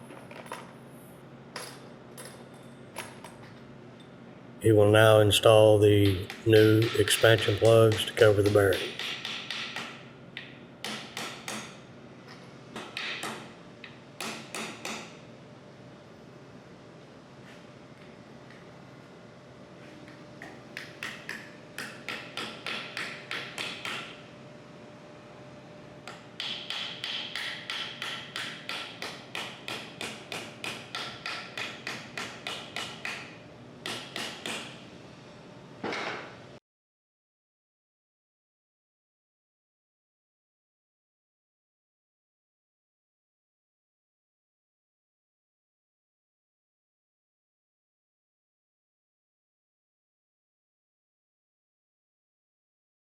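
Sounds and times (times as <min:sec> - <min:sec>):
hammer striking metal: 0:05.9 - 0:10.0
hammer tapping on metal: 0:05.9 - 0:11.7, 0:20.4 - 0:24.2, 0:26.1 - 0:34.8.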